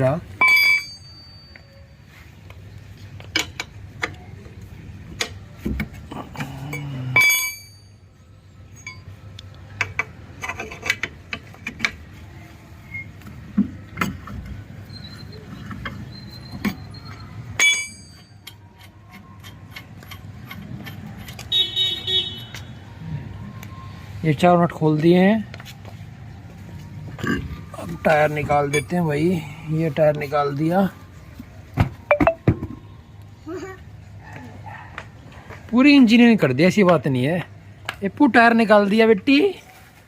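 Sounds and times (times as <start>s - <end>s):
ringing metal clanks: 0.4s - 1.8s, 6.7s - 8.1s, 8.8s - 9.2s, 16.4s - 18.8s
wrench clicking on wheel nuts: 15.8s - 21.5s.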